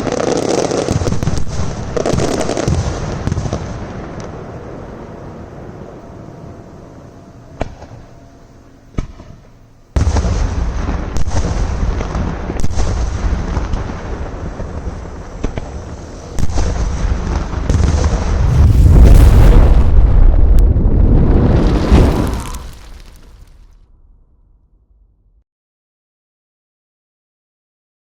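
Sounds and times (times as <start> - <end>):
firework bangs: 0.0 - 4.7, 10.0 - 23.7
fireworks barrage and crackle: 0.0 - 6.8, 8.9 - 24.0.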